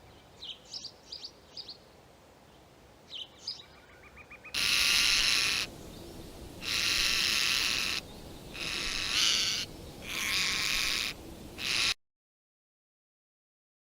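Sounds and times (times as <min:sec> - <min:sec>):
high-pitched animal calls: 0:04.5 - 0:05.7, 0:06.6 - 0:12.0.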